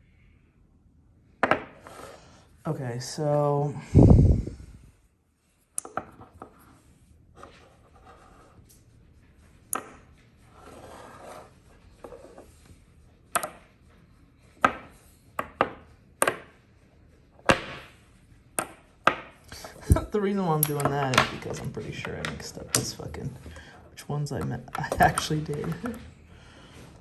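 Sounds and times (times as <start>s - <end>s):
light rubbing and sliding: 5.4s - 13.3s.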